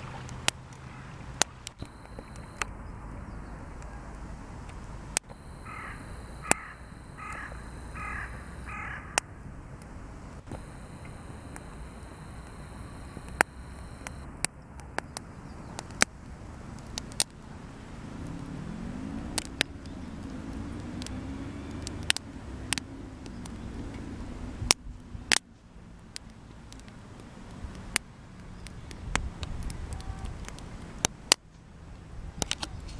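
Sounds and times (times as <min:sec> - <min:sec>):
distant engine drone: 0:00.0 - 0:14.3
campfire crackling and popping: 0:00.0 - 0:32.9
traffic rumble: 0:00.0 - 0:32.9.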